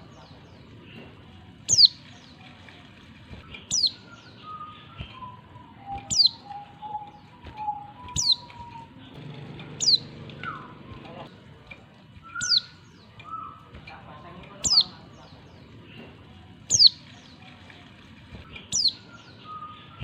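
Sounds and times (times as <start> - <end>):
bird giving downward-sliding calls: 9.8 - 10.8.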